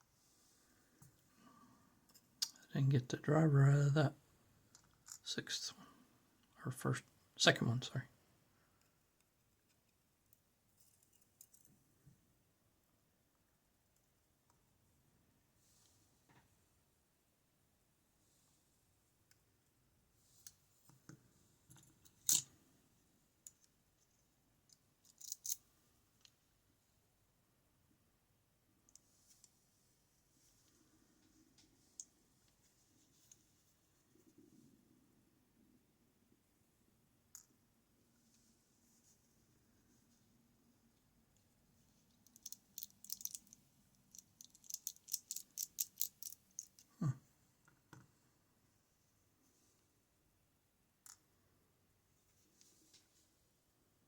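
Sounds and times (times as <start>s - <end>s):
small clicks of lock parts: 8.8s - 11.8s, 20.4s - 22.5s, 24.7s - 25.6s, 42.2s - 46.9s.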